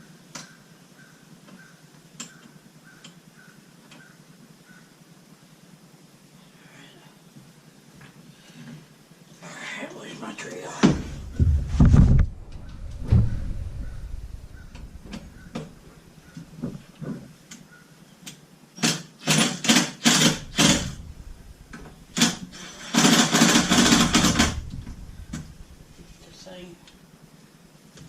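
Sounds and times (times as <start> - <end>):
heavy thumps and knocks: 10.8 - 17.2, 20.1 - 26.2.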